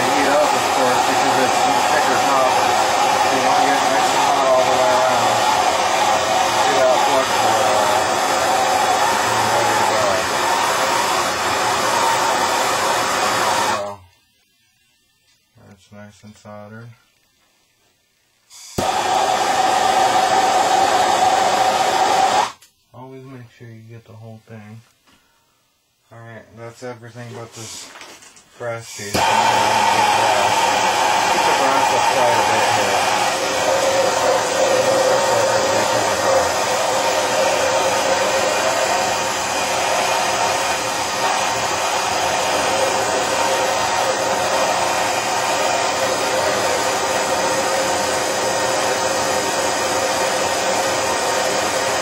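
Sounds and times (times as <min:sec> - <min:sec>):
gas torch hissing: 0:00.0 - 0:14.0, 0:18.5 - 0:22.6, 0:28.8 - 0:52.0.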